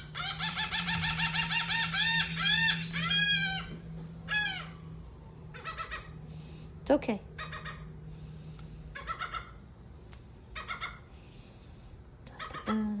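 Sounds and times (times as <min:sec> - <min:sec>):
gull calling: 0:00.0 - 0:04.9, 0:05.5 - 0:06.2, 0:08.9 - 0:09.6, 0:10.5 - 0:11.1
steady low hum: 0:00.0 - 0:13.0.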